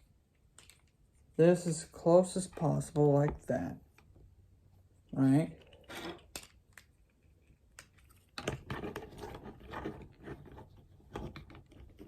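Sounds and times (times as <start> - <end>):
plastic toy parts clicking: 0.0 - 1.3, 5.6 - 8.8.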